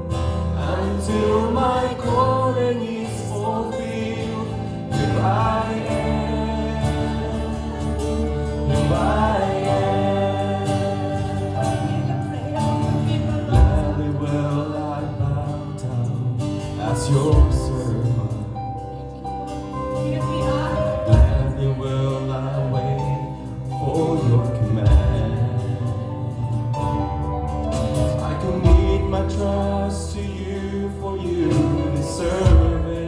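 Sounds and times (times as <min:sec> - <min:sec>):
gospel song with singing: 0:00.0 - 0:33.0
low drum hits: 0:13.5 - 0:14.2.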